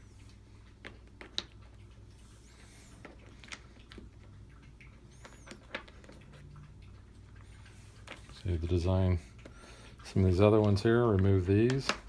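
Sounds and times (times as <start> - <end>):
wooden blocks clicking: 10.6 - 12.0.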